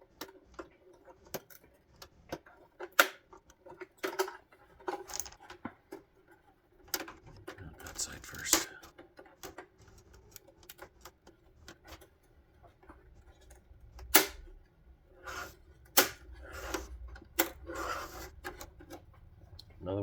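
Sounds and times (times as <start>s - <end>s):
plastic clicks and scraping: 0.0s - 19.8s
plastic trim snapping: 14.0s - 14.5s, 16.0s - 16.8s.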